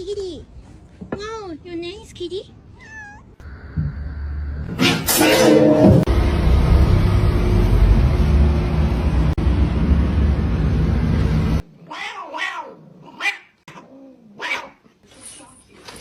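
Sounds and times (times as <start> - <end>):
animal cries: 2.8 - 3.7, 11.8 - 14.8
loud steady rumbling: 3.4 - 11.6.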